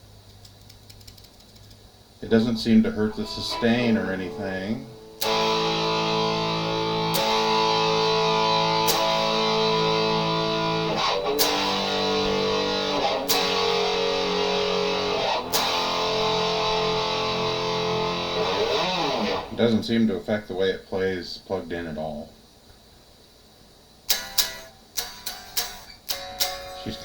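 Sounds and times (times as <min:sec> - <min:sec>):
electric guitar strumming chords: 0:02.4 - 0:19.8, 0:24.1 - 0:27.0.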